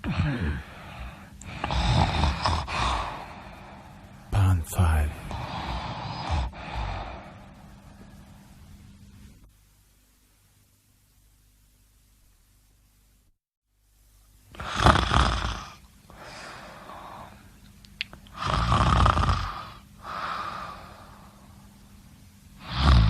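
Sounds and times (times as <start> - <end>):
person snoring: 0.0 - 4.0, 4.9 - 7.6, 14.5 - 17.4, 18.3 - 21.6, 22.6 - 23.0
soft breathing: 0.0 - 4.3, 5.2 - 9.4, 16.1 - 17.6, 19.4 - 21.8.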